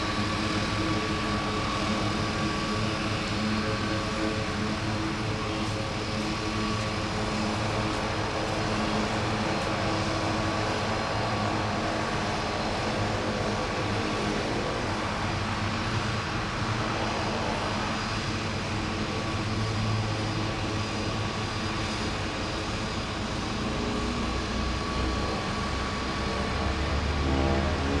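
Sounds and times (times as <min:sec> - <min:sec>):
propeller engine drone: 0:00.0 - 0:28.0.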